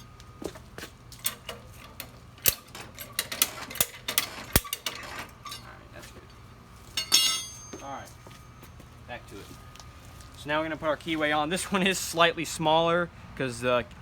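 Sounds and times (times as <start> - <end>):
mower metallic clicks and clanks: 1.1 - 6.4.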